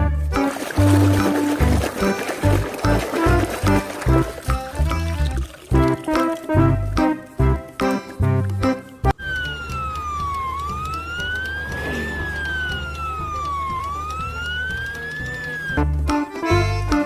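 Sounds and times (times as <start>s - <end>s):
siren wailing: 9.2s - 16.0s.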